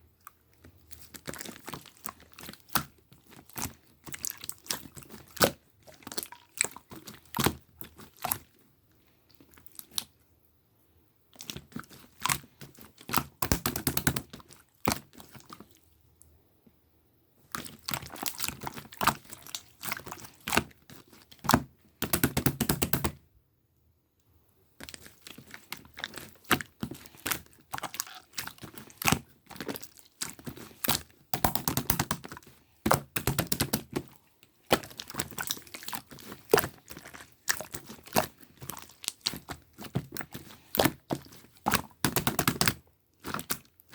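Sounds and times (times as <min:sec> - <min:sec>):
slime crackling and popping: 0:11.4 - 0:15.7, 0:24.8 - 0:43.9.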